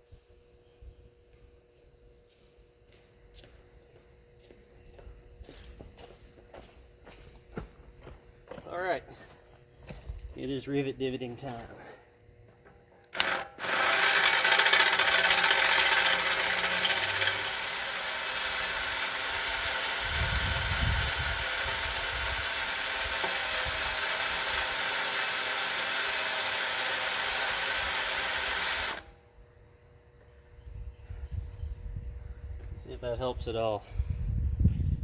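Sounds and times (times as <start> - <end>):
air hammer chattering on steel: 13.2 - 29.0.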